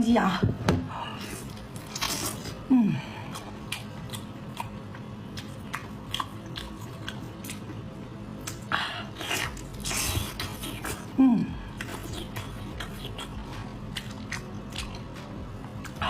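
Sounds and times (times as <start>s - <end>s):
person crunching and chewing: 1.3s - 2.6s, 3.2s - 7.8s, 8.4s - 16.0s.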